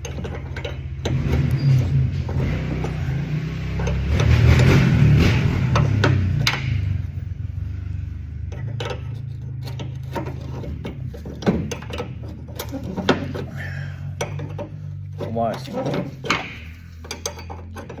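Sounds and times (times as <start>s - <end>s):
metal clicks and knocks from tools: 0.0s - 3.0s, 8.4s - 18.0s
steady low hum: 0.0s - 17.6s.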